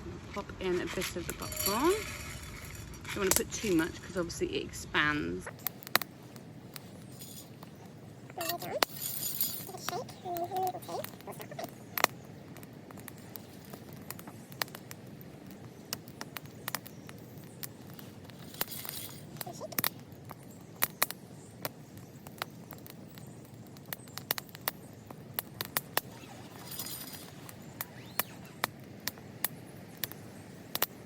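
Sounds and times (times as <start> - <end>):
wood fire crackling: 0.0 - 31.0.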